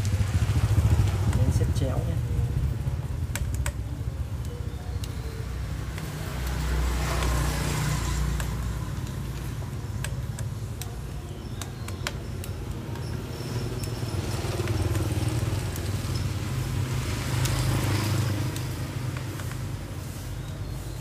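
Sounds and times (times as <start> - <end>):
light clicks and taps: 8.2 - 13.1, 18.4 - 19.8.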